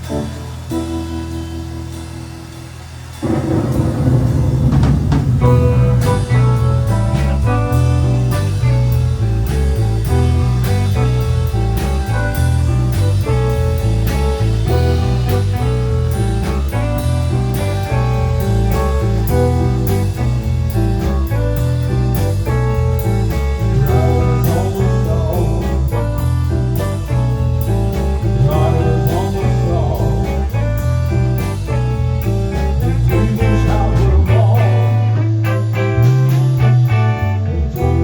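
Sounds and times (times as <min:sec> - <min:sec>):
bass line: 0:00.0 - 0:38.0
blues guitar: 0:00.0 - 0:38.0.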